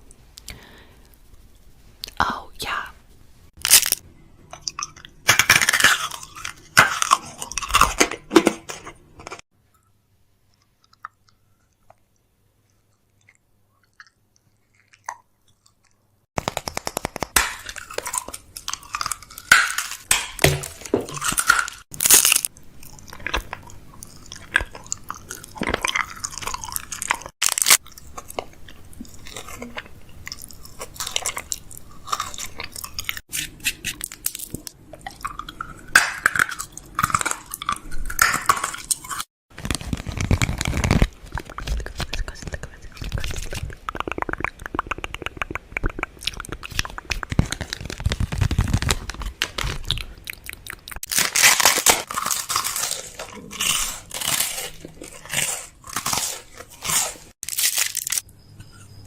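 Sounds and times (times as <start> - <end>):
food packaging crinkling and clattering: 5.3 - 9.4, 36.3 - 42.2, 47.1 - 50.2, 51.0 - 58.2.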